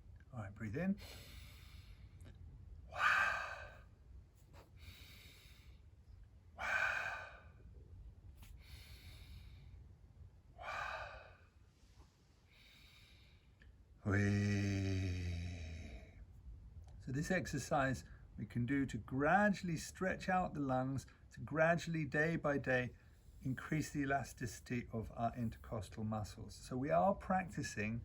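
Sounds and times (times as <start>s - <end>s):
man breathing deeply: 1.0s - 2.2s, 2.9s - 3.9s, 4.6s - 5.9s, 6.6s - 7.7s, 8.4s - 9.8s, 10.6s - 11.6s.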